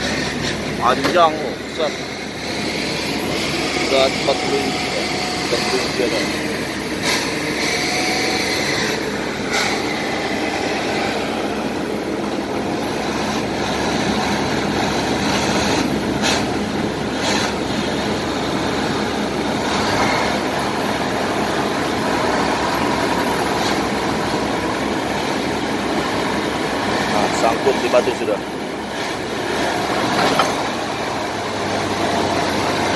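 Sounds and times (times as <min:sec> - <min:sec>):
bulldozer diesel engines under load: 0:00.0 - 0:32.9.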